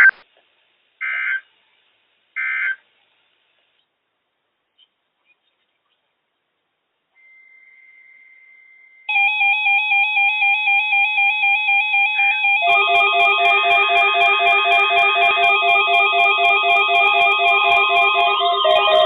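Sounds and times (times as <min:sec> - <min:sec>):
fast pulsing alarm beep: 0:09.1 - 0:19.0
warbling electronic alarm beep: 0:12.0 - 0:19.0.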